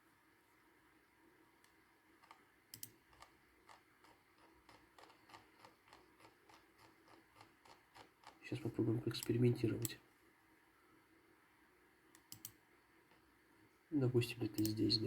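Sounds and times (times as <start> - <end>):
keyboard typing: 2.1 - 9.4
mouse clicks: 12.1 - 13.2.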